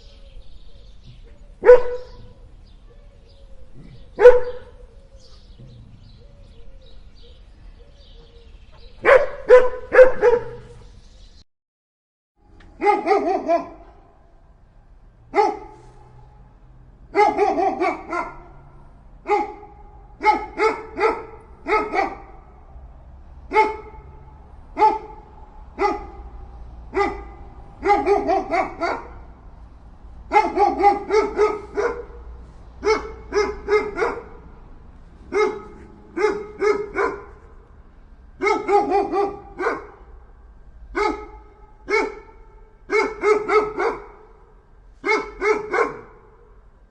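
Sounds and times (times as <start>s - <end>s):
dog barking aggressively: 1.6s - 2.2s, 3.8s - 4.8s, 9.0s - 10.8s, 12.8s - 13.8s, 15.3s - 15.8s, 17.1s - 18.6s, 19.3s - 22.4s, 23.5s - 24.1s, 24.8s - 25.2s, 25.8s - 29.3s, 30.3s - 34.5s, 35.2s - 37.6s, 38.4s - 40.1s, 41.0s - 44.4s, 45.0s - 46.3s.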